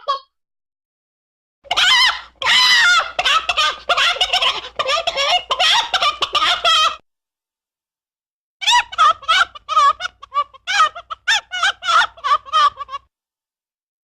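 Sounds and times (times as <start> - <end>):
chicken-like clucking and squawking: 1.7 - 7.0, 8.6 - 13.1.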